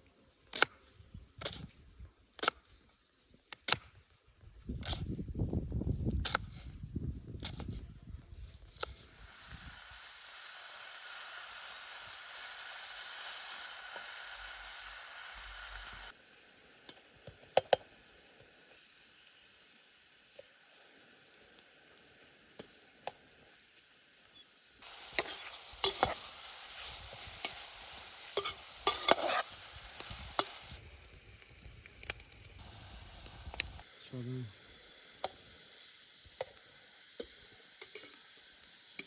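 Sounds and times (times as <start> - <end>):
food sizzling in oil: 8.8 - 39.0.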